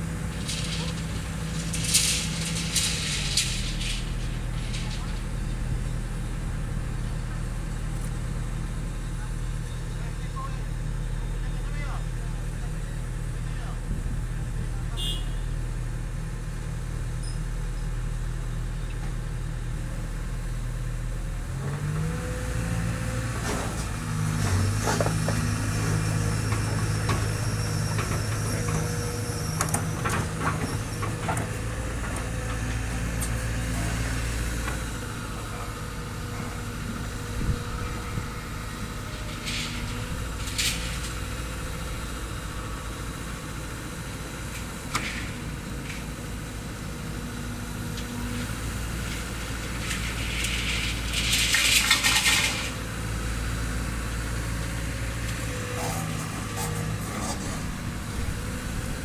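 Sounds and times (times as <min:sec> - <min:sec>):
excavator diesel engine running: 0:00.0 - 0:59.0
steel clanking: 0:00.3 - 0:05.7.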